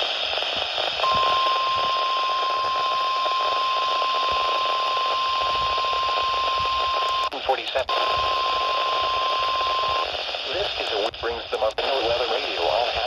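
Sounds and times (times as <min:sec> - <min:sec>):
radio hiss and static: 0:00.0 - 0:13.0
steady pure alarm tone: 0:01.0 - 0:07.3, 0:07.9 - 0:10.1.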